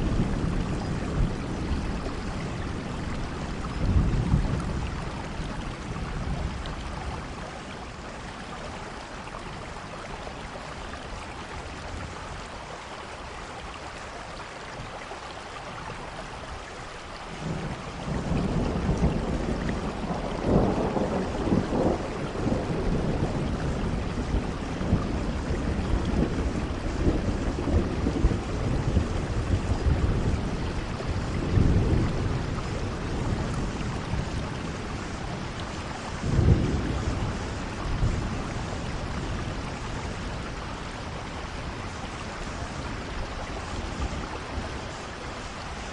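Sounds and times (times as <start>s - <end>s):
rolling thunder: 0.0s - 7.5s, 17.4s - 45.9s
steady rain: 0.0s - 45.9s.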